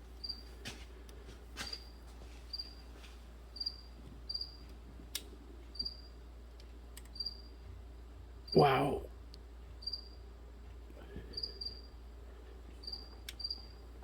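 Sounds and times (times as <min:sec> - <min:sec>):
cricket chirping: 0:00.2 - 0:00.5, 0:02.5 - 0:02.9, 0:03.6 - 0:04.7, 0:05.7 - 0:06.2, 0:07.1 - 0:07.6, 0:09.8 - 0:10.3, 0:11.2 - 0:12.0, 0:12.8 - 0:13.9.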